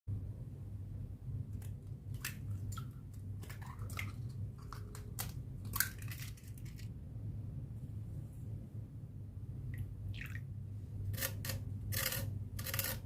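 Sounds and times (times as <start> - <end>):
low hum: 0.1 - 13.0
food crackling and scraping: 2.1 - 6.9, 11.1 - 13.0.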